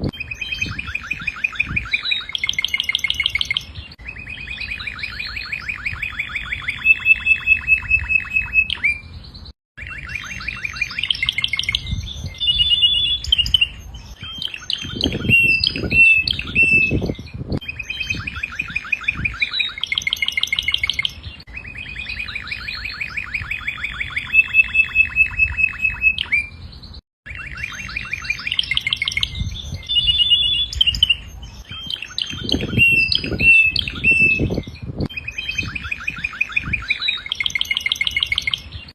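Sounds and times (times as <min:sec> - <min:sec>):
canary singing trills: 0:00.0 - 0:38.9.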